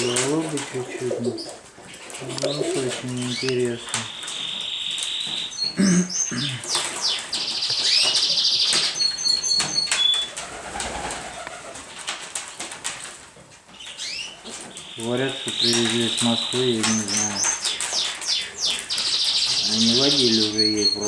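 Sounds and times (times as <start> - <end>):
pigeons flapping wings: 0.0 - 4.2, 9.6 - 13.3, 15.5 - 20.7
pigeons cooing: 0.0 - 13.2, 13.8 - 21.0
bird chirps and trill: 1.2 - 11.4, 13.8 - 21.0.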